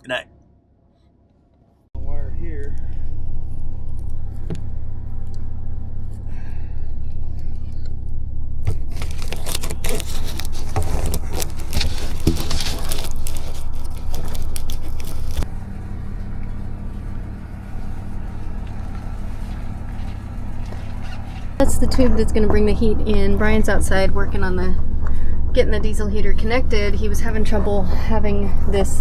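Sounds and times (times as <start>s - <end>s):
scraping clicking and rattling: 8.8s - 15.5s
engine idling: 11.6s - 29.0s.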